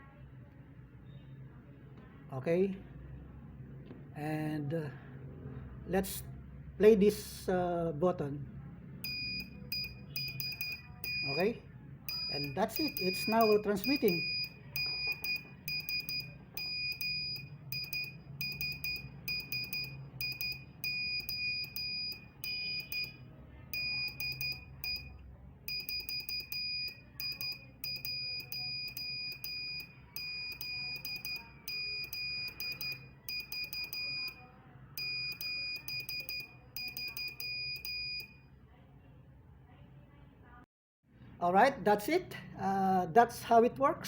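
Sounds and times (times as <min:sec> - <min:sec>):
faint low hum: 0:00.0 - 0:41.6
morse code beeps: 0:09.0 - 0:38.5.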